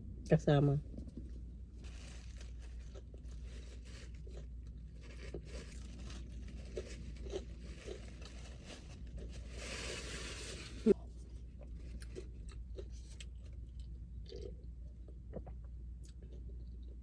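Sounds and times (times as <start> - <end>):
low steady hum: 0.0 - 17.0
paper wrappers rustling: 1.8 - 11.0
food crunching: 1.8 - 14.7.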